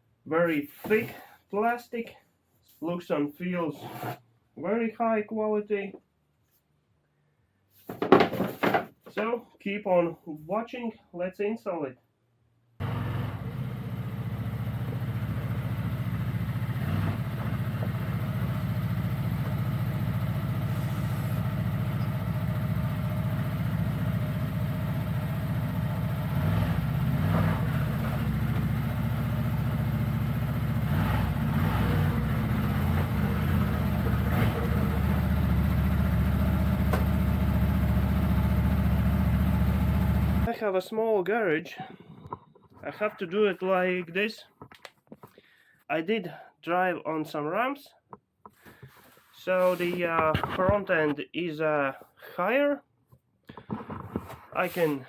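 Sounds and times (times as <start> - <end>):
atv engine running at low revs: 12.8 - 40.5.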